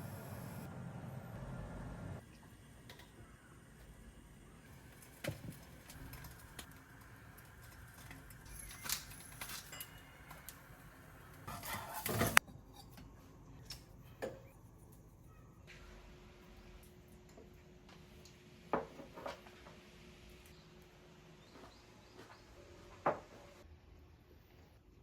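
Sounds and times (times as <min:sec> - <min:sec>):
dishes and utensils clinking: 0:08.4 - 0:10.6, 0:11.4 - 0:13.0.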